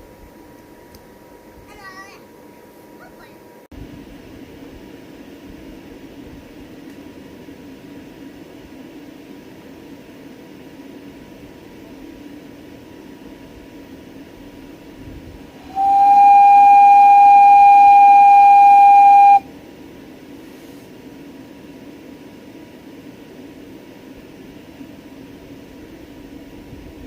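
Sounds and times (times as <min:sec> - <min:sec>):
steam whistle blowing: 0:15.6 - 0:19.5.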